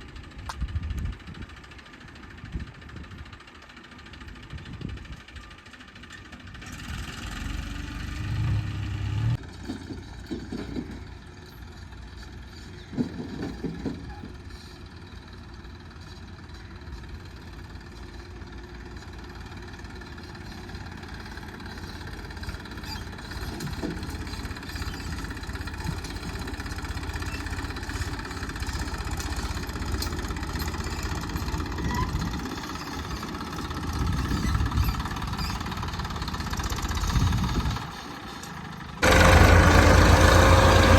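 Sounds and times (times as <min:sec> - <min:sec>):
diesel engine idling: 0:14.7 - 0:40.9.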